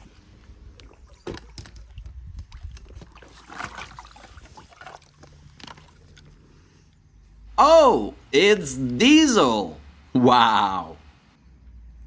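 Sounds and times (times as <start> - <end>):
water sloshing and splashing: 0.0 - 6.4.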